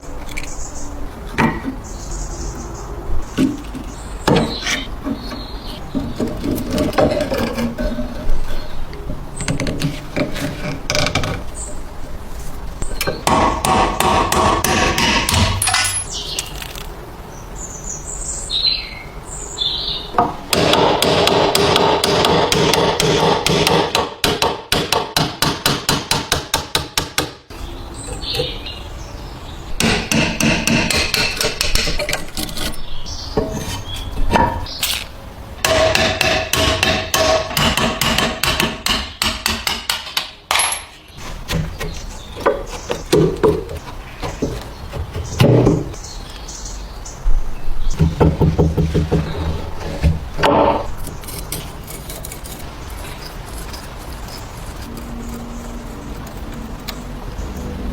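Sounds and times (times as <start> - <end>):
hammer striking metal: 35.6 - 40.9.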